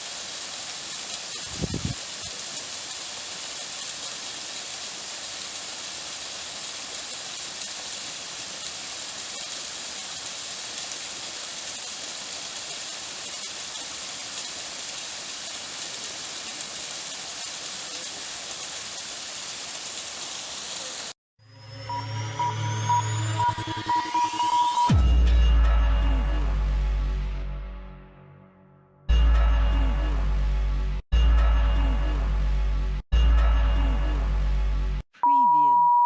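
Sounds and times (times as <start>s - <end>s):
waterfall rushing into pool: 0.0s - 21.2s.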